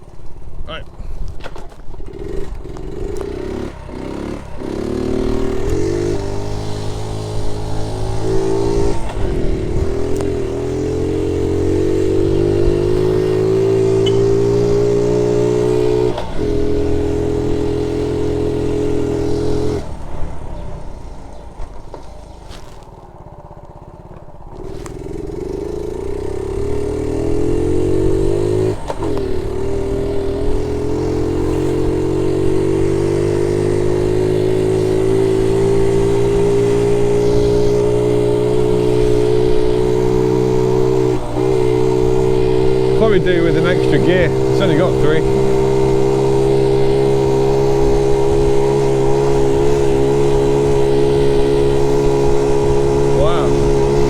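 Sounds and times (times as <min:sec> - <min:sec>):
small motorbike engine shifting gears: 0:00.0 - 0:54.0.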